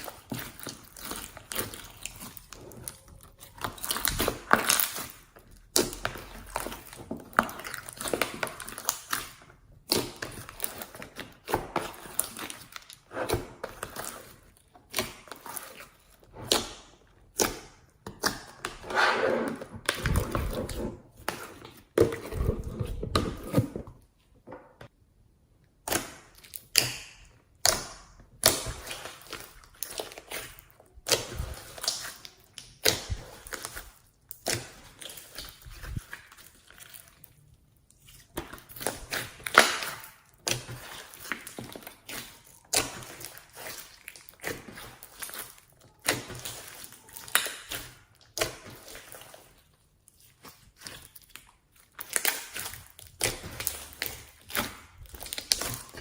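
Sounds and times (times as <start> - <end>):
slime squishing: 0.0 - 24.2, 25.7 - 56.0.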